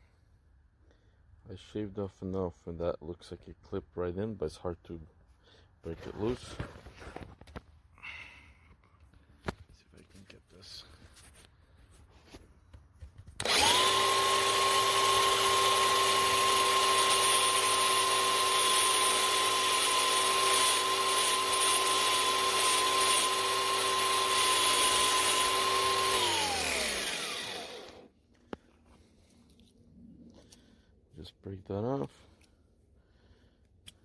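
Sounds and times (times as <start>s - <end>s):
handheld electric power tool running: 13.4s - 28.1s.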